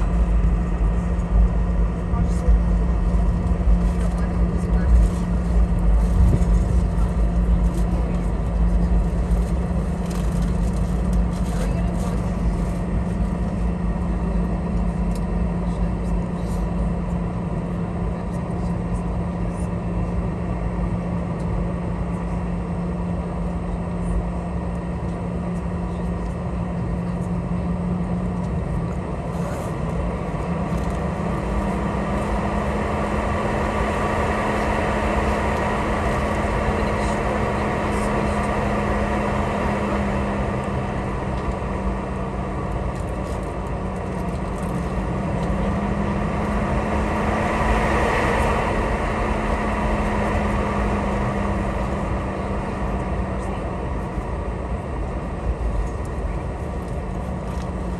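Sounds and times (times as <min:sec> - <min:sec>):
cabin rumble and air hiss: 0:00.0 - 0:14.4, 0:28.4 - 0:57.9
jet engines humming: 0:00.0 - 0:57.9.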